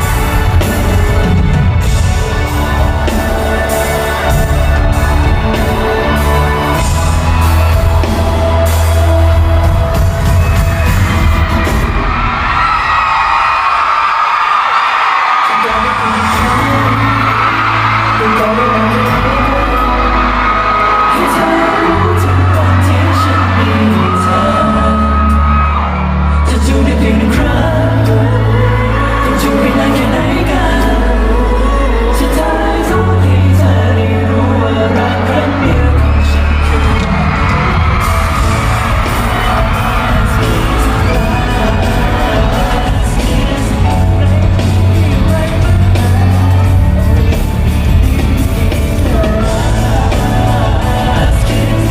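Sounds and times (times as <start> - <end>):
heavy bass line: 0.0 - 13.2, 15.7 - 51.9
crowd whooping: 0.0 - 51.9
live pop music: 0.0 - 51.9
person singing: 15.4 - 51.9.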